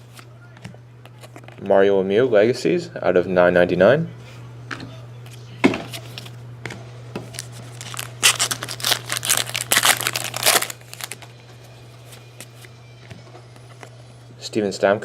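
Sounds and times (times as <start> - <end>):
steady low hum: 0.0 - 15.0
wrapper crinkling and tearing: 7.3 - 11.2.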